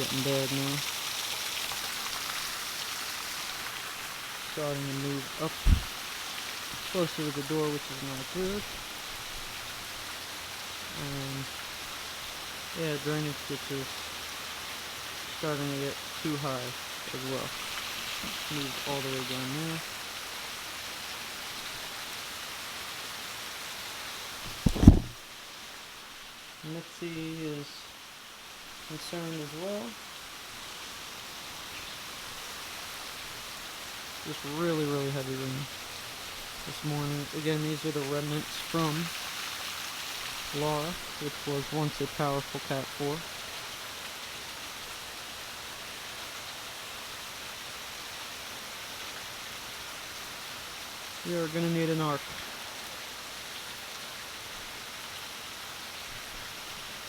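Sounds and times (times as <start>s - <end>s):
heavy rain hissing: 0.0s - 57.0s
loud low thump: 5.6s - 6.0s, 24.5s - 25.2s.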